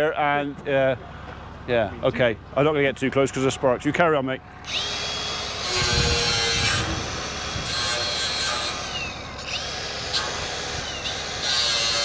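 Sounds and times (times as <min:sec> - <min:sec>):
angle grinder motor whine: 0:04.7 - 0:12.0.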